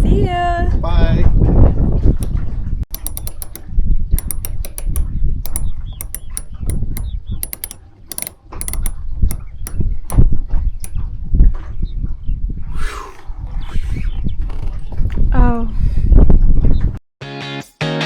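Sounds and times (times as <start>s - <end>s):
wind rumble on microphone: 0.0s - 2.8s, 8.9s - 17.0s
metallic ratchet clicking: 2.2s - 11.0s.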